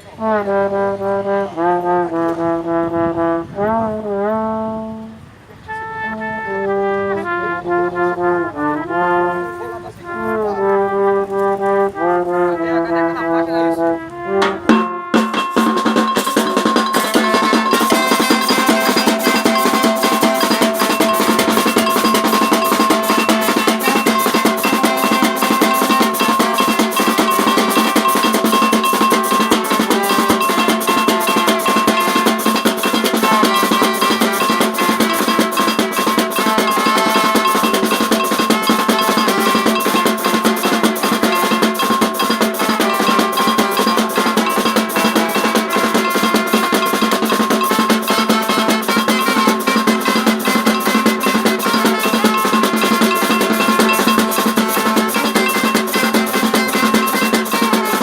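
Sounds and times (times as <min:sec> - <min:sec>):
held melody notes: 0:00.0 - 0:58.0
fast drum rhythm: 0:14.4 - 0:58.0.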